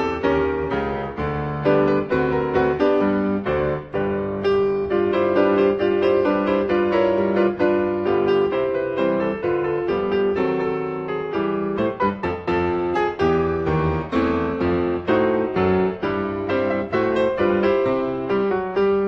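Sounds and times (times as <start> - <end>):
piano music: 0.0 - 19.0.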